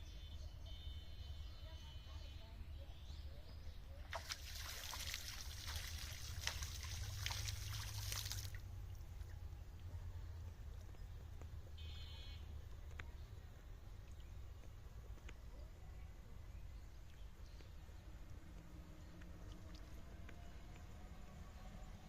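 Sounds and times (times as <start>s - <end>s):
water splashing and trickling: 3.9s - 11.0s, 16.8s - 21.7s.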